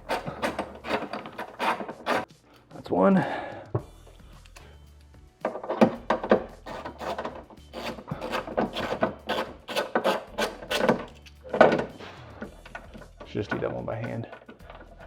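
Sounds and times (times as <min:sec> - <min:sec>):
ratchet wrench rasping: 0:00.0 - 0:02.4, 0:05.4 - 0:15.0.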